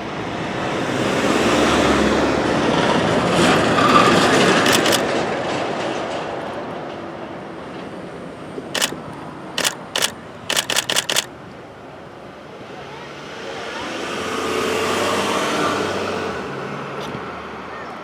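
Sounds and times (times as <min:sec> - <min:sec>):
street traffic noise: 0:00.0 - 0:18.0
camera shutters clicking: 0:04.6 - 0:05.1, 0:08.8 - 0:09.0, 0:09.6 - 0:11.3.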